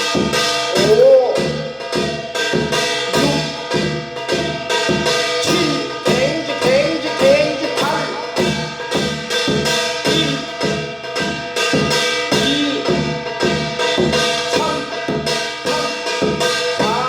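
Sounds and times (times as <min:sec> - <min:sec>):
slow ringing percussion strikes: 0:00.0 - 0:17.0.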